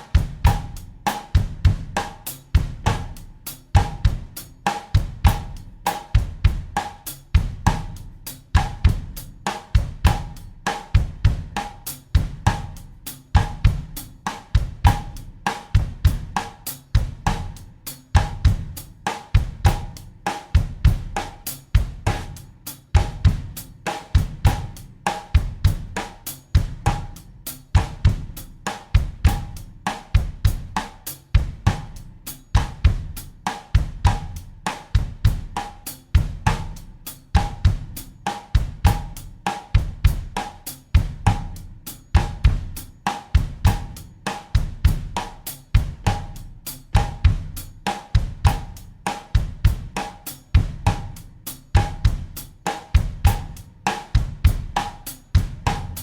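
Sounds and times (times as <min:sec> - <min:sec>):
drum kit playing groove: 0:00.0 - 0:56.0.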